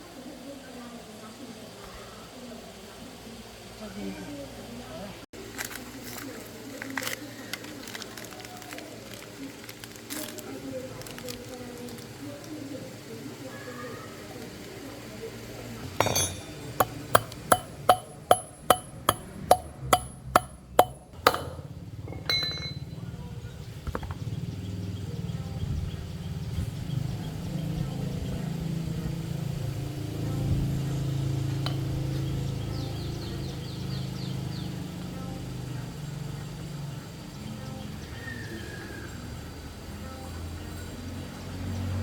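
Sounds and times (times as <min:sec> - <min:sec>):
hammer striking metal: 0:16.0 - 0:21.7.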